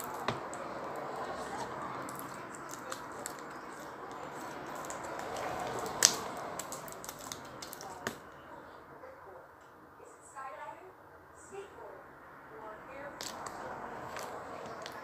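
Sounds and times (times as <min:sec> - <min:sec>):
slime clicking and crackling: 0:00.0 - 0:08.2, 0:13.2 - 0:15.0
slime popping: 0:00.0 - 0:08.2, 0:13.2 - 0:15.0.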